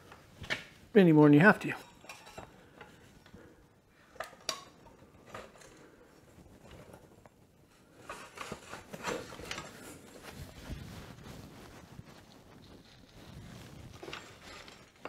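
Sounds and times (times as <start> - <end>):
metal parts and tools clanking: 1.6 - 3.1, 13.9 - 15.0.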